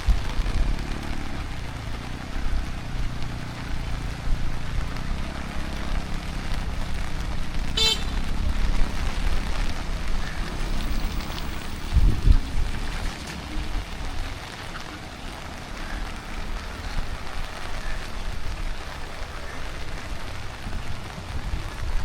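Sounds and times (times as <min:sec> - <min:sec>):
steady rain: 0:00.0 - 0:22.0
vehicle engine hum passing: 0:00.0 - 0:22.0.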